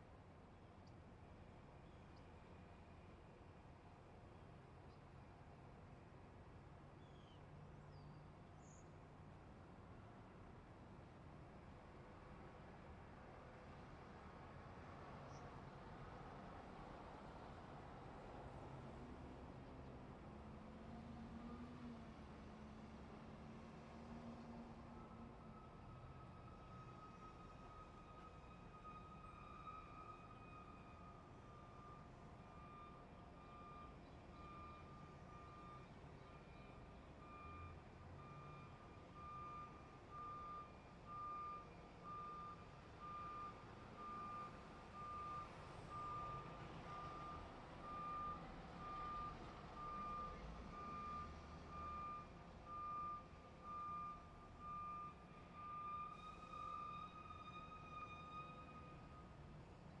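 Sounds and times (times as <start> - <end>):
reversing alarm beeping: 25.5 - 59.3.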